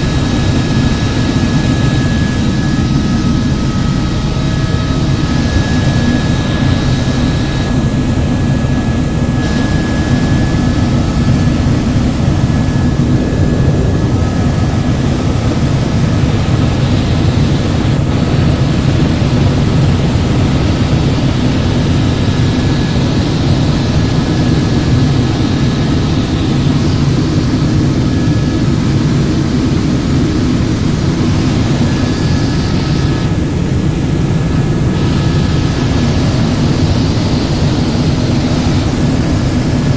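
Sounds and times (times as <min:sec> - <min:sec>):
helicopter rotor and engine: 0:00.0 - 0:39.9
thin high whine: 0:00.0 - 0:39.9.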